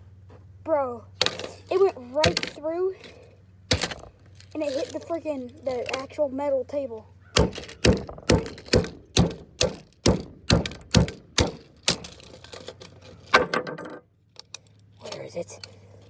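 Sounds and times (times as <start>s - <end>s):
hand tool smashing a computer mouse: 1.2s - 5.0s, 7.4s - 13.6s.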